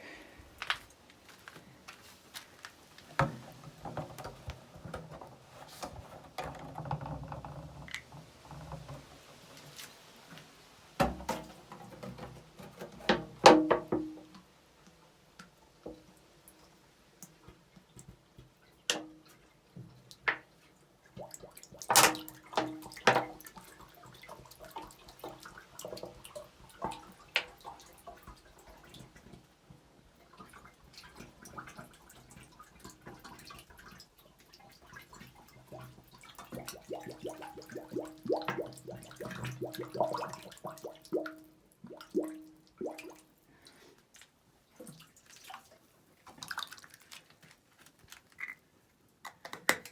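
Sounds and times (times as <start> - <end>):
water splashing and dripping: 15.5 - 48.6
water gurgling into bottles: 30.6 - 43.3.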